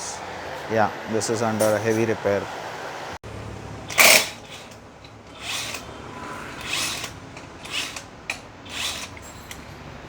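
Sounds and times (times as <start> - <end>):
scraping and rattling: 3.9 - 9.8.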